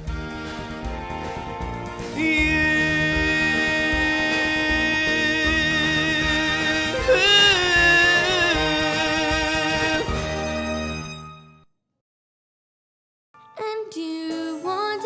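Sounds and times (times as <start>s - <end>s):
musical backing track: 0.0s - 11.6s, 13.4s - 15.0s
boy singing long note: 2.2s - 10.1s.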